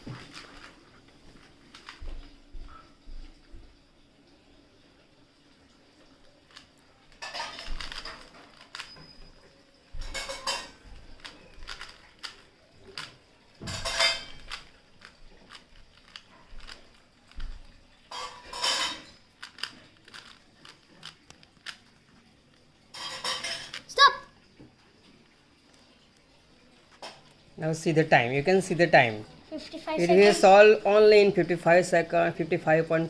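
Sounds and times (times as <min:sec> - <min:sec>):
plastic puzzle cube clicking: 0:07.7 - 0:08.9, 0:11.2 - 0:13.2, 0:14.4 - 0:17.4, 0:19.4 - 0:22.0.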